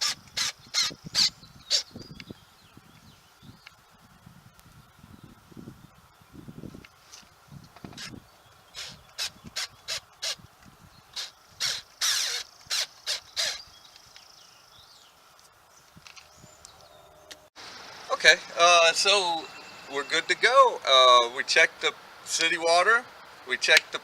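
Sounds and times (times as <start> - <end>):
bird harsh calls: 0.0 - 3.3, 7.9 - 15.2.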